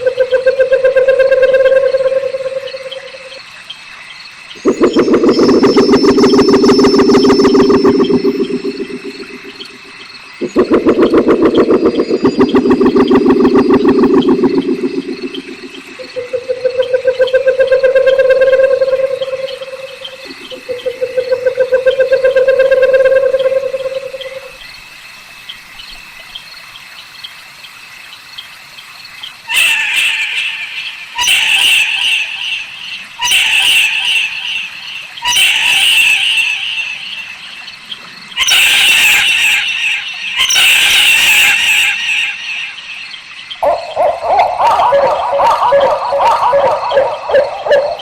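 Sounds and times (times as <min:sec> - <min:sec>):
owl harsh hissing screeches: 0:38.4 - 0:42.4
low owl hoot: 0:43.6 - 0:48.0.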